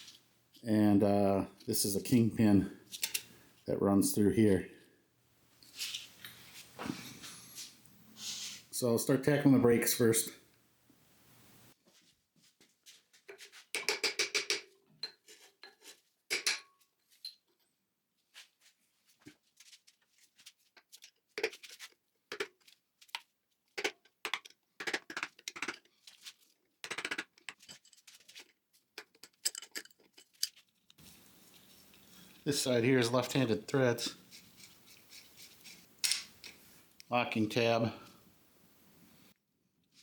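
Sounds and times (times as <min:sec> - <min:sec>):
steel hand tools clinking on metal: 0:29.0 - 0:30.6.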